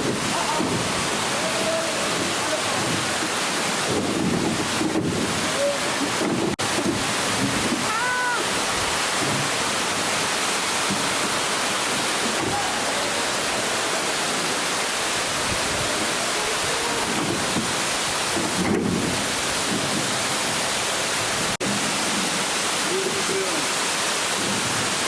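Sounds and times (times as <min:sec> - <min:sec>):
waterfall rushing: 0:00.0 - 0:25.0.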